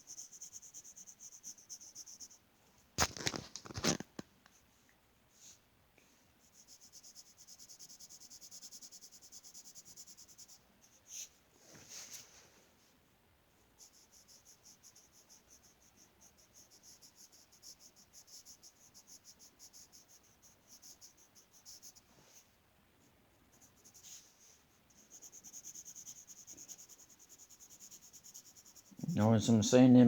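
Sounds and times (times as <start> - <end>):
colored pencil scratching on paper: 0.0 - 2.4, 6.4 - 11.4, 13.8 - 22.5, 23.4 - 29.5.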